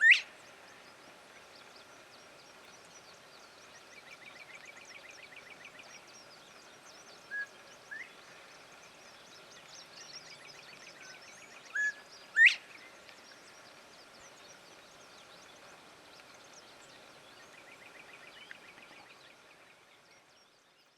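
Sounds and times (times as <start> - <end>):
bobwhite whistling call: 0.0 - 0.3, 11.7 - 12.6.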